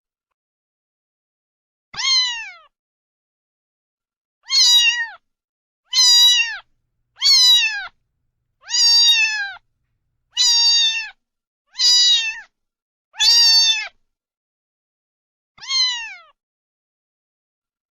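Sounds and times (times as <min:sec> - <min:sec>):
cat meowing: 0:02.0 - 0:02.7, 0:04.5 - 0:05.2, 0:05.9 - 0:08.0, 0:08.6 - 0:09.6, 0:10.4 - 0:11.2, 0:11.8 - 0:12.5, 0:15.6 - 0:16.3.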